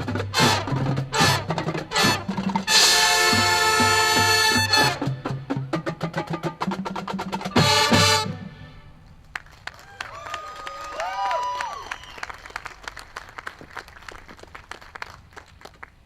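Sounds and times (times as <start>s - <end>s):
drumline playing: 0.0s - 9.0s
marching band brass: 0.0s - 9.3s.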